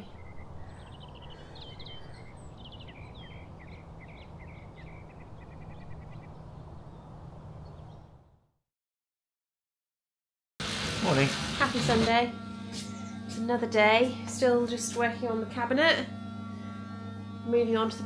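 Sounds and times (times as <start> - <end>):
small birds chirping: 0.0 - 8.2.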